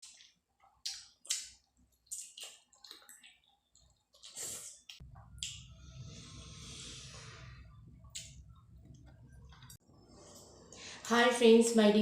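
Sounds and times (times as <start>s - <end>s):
wet smacks and chewing: 0.0s - 5.6s.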